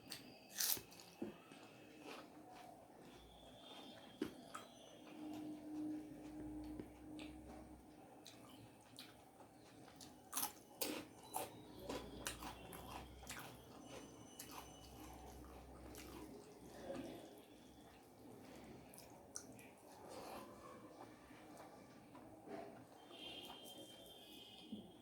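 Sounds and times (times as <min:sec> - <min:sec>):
wet chewing: 0:08.2 - 0:17.2.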